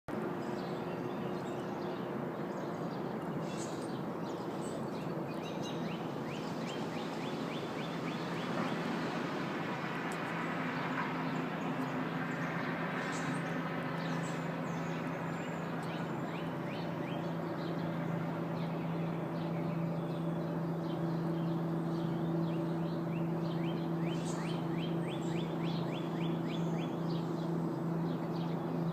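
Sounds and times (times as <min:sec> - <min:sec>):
birds chirping: 0:00.1 - 0:28.9
steady low hum: 0:02.1 - 0:28.9.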